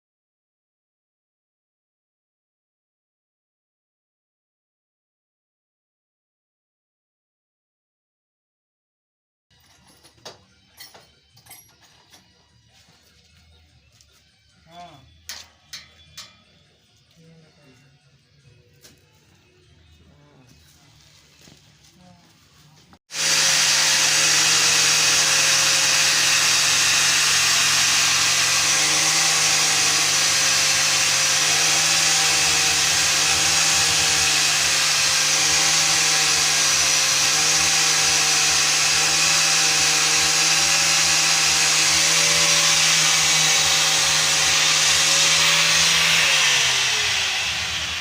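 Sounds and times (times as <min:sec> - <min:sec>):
power tool motor running: 0:23.1 - 0:48.0.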